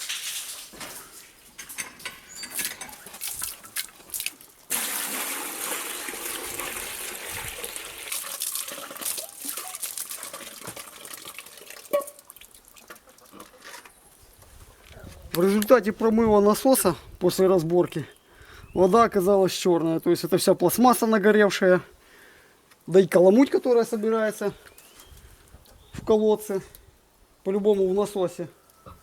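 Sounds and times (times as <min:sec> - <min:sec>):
water splashing through pump: 0:00.0 - 0:01.4, 0:02.5 - 0:13.5.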